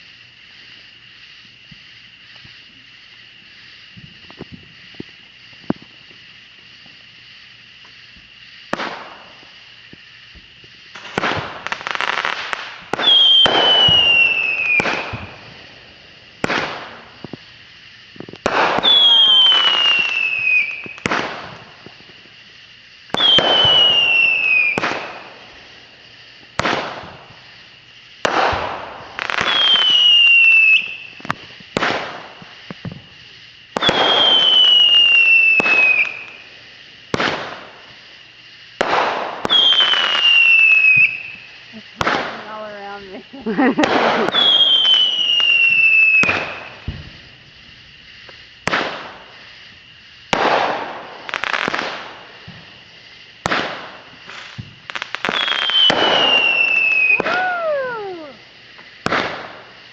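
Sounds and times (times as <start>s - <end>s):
fireworks cracking and bursting: 0.0s - 59.9s
firework falling whistle: 7.8s - 15.7s, 18.2s - 22.1s, 23.1s - 25.4s, 28.2s - 36.5s, 38.8s - 52.8s, 53.4s - 59.8s.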